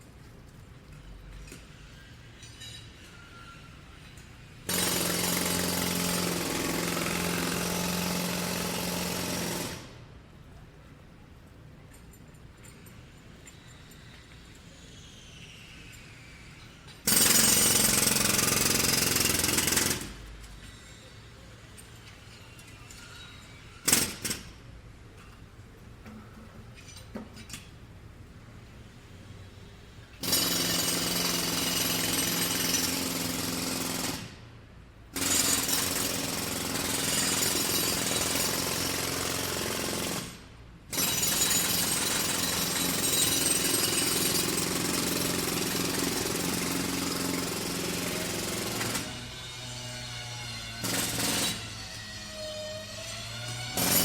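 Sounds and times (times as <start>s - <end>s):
street background: 0.0s - 54.0s
jackhammer breaking hard material: 4.7s - 9.8s, 17.0s - 20.2s, 35.2s - 49.2s, 50.8s - 51.6s, 53.8s - 54.0s.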